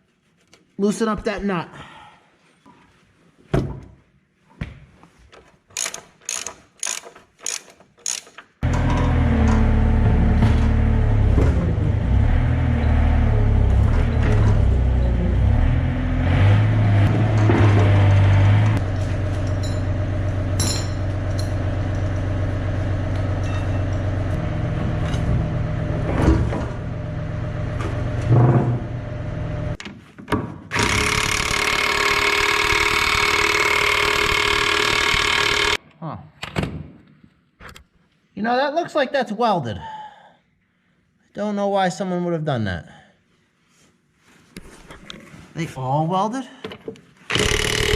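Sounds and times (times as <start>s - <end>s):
motor running steadily: 30.8s - 35.8s, 47.3s - 47.9s.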